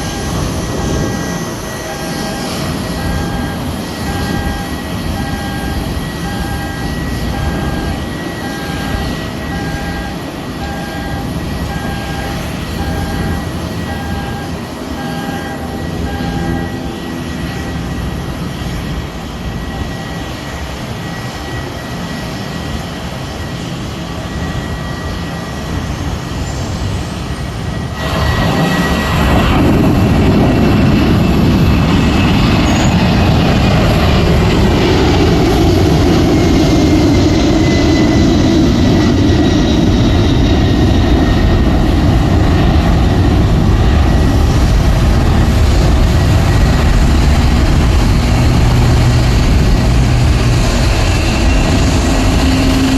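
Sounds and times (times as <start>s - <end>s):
faint whining tones: 0.0s - 21.6s
aircraft engines deep rumble: 0.0s - 52.9s.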